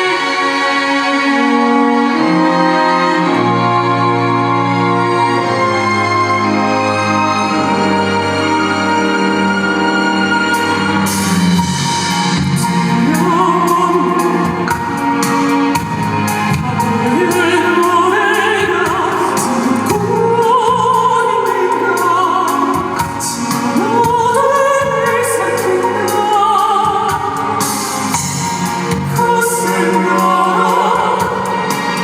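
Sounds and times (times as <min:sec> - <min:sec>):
instrumental accompaniment: 0:00.0 - 0:32.0
vocal group singing operatically: 0:12.7 - 0:32.0.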